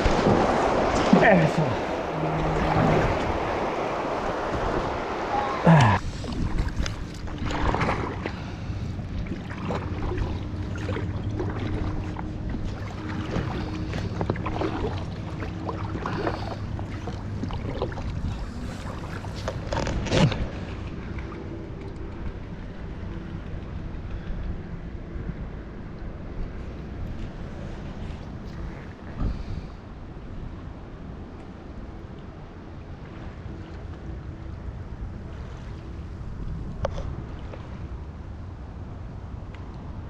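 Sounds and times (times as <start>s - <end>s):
paddle strokes splashing: 0.0s - 22.9s
running water: 0.0s - 23.8s
low steady hum: 0.0s - 40.0s.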